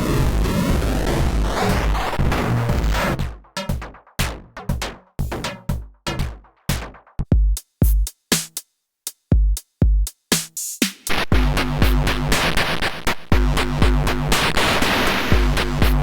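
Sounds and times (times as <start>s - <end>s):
bit-crushed drum machine beat: 0.1s - 16.0s.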